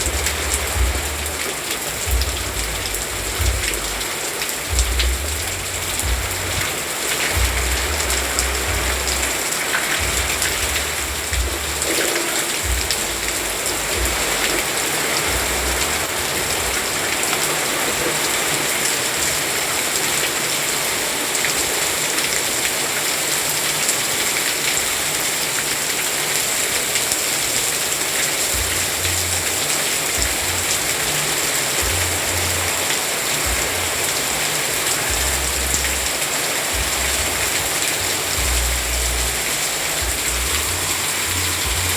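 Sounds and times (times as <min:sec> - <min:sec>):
low rumbles: 0:00.0 - 0:04.1, 0:04.7 - 0:17.0, 0:36.7 - 0:41.9
steady rain falling: 0:00.0 - 0:41.9.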